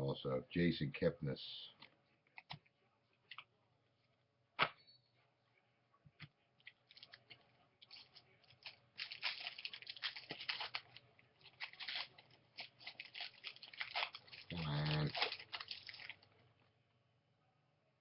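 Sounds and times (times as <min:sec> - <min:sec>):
foil wrapper crinkling and tearing: 0:07.8 - 0:16.4.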